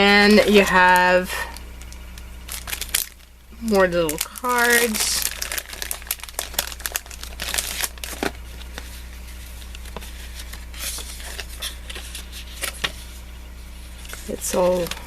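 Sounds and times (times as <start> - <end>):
packaging crinkling and rustling: 1.7 - 13.0.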